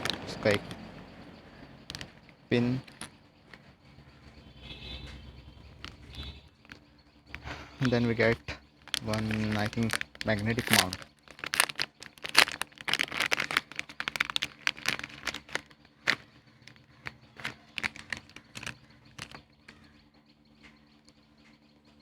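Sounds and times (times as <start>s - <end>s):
packaging crinkling and rustling: 0.0s - 0.8s, 1.9s - 2.1s, 2.8s - 3.1s, 5.8s - 19.4s.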